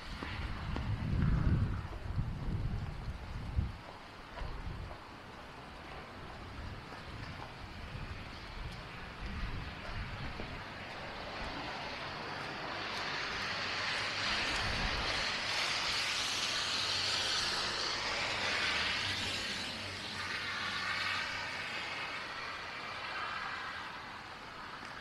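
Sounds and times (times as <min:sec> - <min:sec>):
passing vehicle hiss: 0:10.6 - 0:25.0.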